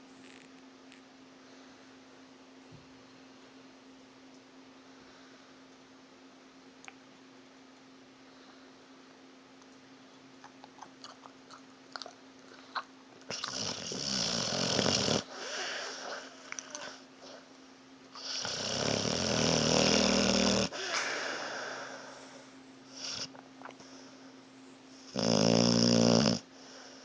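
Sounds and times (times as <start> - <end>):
dog snoring: 12.7 - 17.4, 18.2 - 21.9, 22.9 - 23.4, 25.0 - 26.5.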